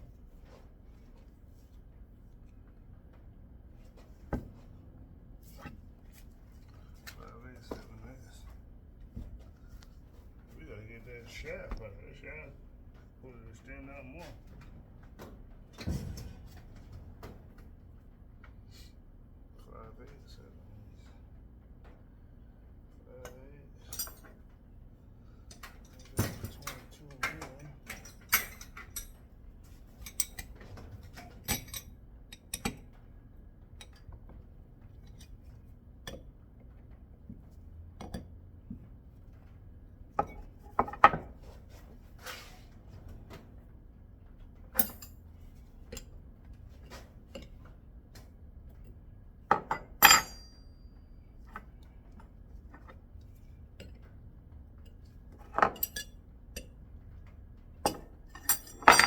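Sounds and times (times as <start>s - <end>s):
metal tools clinking and knocking: 23.8s - 24.4s, 25.5s - 29.3s, 30.0s - 33.0s, 40.2s - 41.3s, 44.8s - 45.2s, 49.5s - 50.8s, 55.4s - 56.1s, 57.8s - 59.0s.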